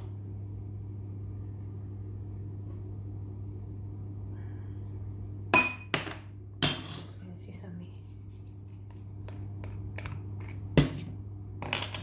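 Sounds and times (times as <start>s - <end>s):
steady low hum: 0.0s - 12.0s
kitchenware clinking: 5.6s - 7.2s.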